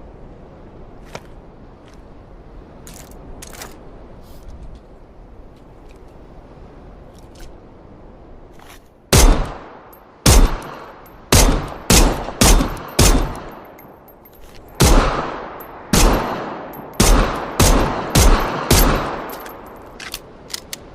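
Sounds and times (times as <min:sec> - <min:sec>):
pistol shots echoing: 0:09.1 - 0:09.6, 0:10.2 - 0:13.6, 0:14.8 - 0:19.4.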